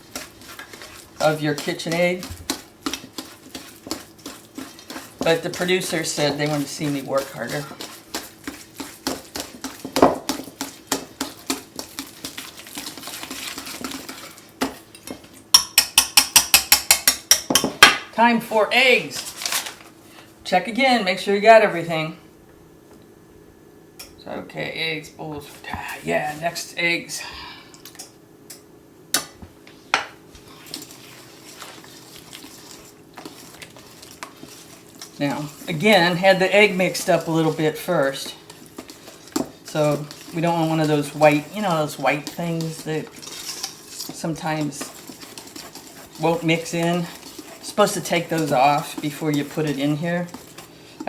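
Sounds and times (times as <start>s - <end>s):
utensil scraping mixing bowl: 0.0s - 17.8s, 29.7s - 51.0s
utensil clinking on bowl: 14.6s - 17.8s.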